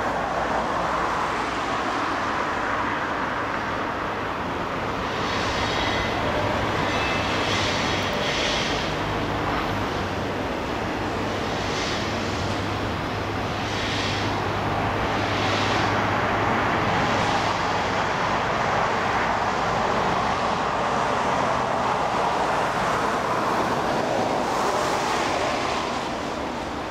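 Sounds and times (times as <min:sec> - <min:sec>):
broad rushing noise: 0:00.0 - 0:26.9
excavator diesel engine humming: 0:00.0 - 0:26.9.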